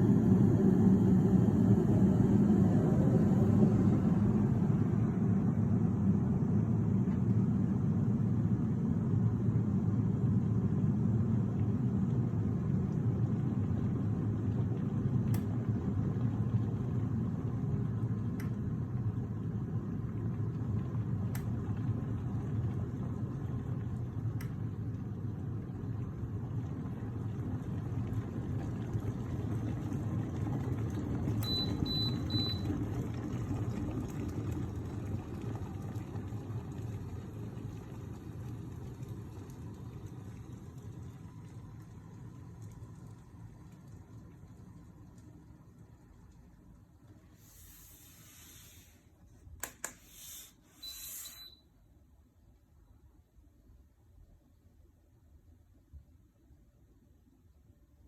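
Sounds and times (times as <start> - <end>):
electric kettle rumbling: 0.0 - 51.6
short high-pitched beeps: 50.8 - 51.6.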